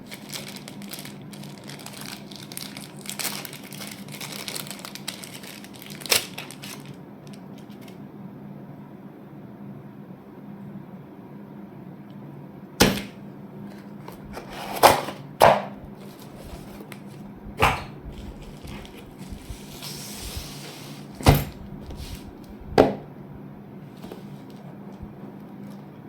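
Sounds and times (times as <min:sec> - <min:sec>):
packaging rustle: 0:00.0 - 0:08.0, 0:16.0 - 0:17.2, 0:18.1 - 0:21.2
low steady hum: 0:00.0 - 0:26.0.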